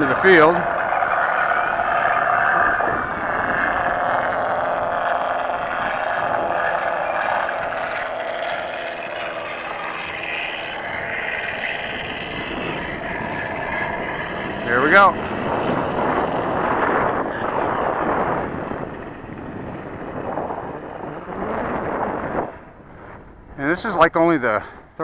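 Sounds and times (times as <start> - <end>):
model plane electric motor: 0.0 - 23.8.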